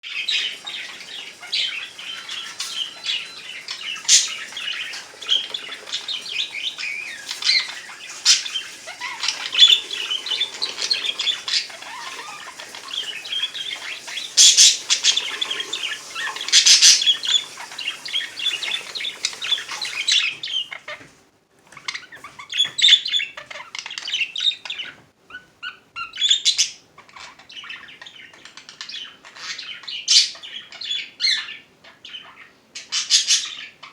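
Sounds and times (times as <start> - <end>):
budgerigars chattering and chirping: 0.1 - 21.0.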